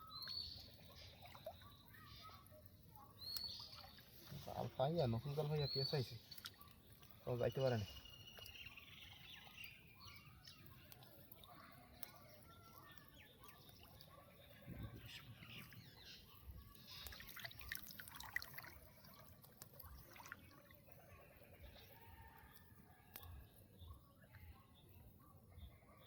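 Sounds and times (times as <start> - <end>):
water drips and trickles: 0.0 - 25.2
faint bird chirps: 0.0 - 26.0.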